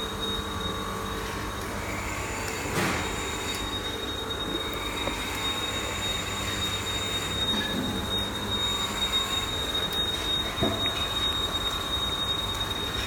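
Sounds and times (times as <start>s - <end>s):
machine hum: 0.0s - 13.0s.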